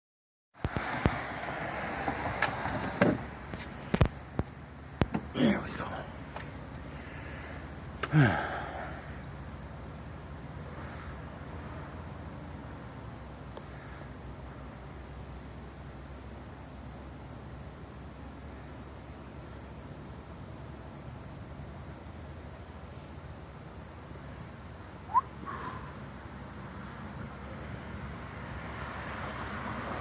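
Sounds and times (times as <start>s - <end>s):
insect trill: 0.6s - 30.0s
loud rising chirp: 25.0s - 26.1s.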